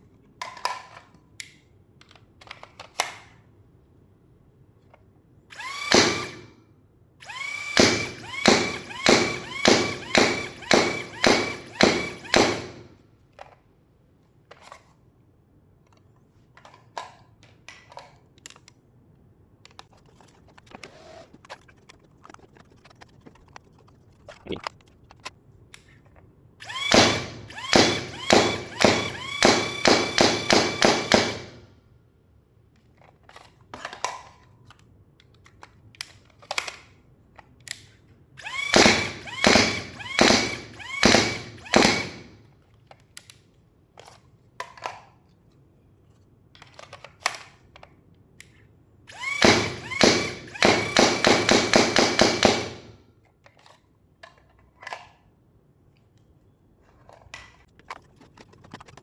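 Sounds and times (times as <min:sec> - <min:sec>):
foam dart blaster firing: 0:05.9 - 0:06.4, 0:07.7 - 0:12.8, 0:26.9 - 0:31.6, 0:38.7 - 0:42.2, 0:49.4 - 0:52.9.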